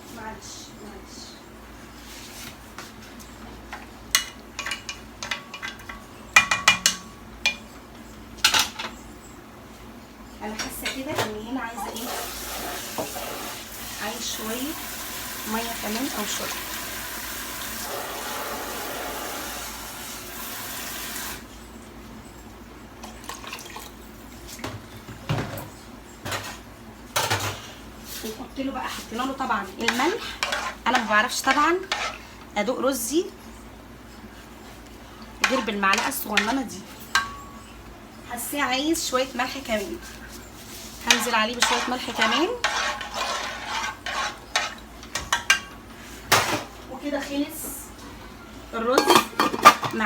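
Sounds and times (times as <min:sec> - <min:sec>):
metal utensil clinking on pot: 0:04.2 - 0:07.6, 0:49.0 - 0:50.0
kitchen water running: 0:11.8 - 0:21.5, 0:23.0 - 0:24.0.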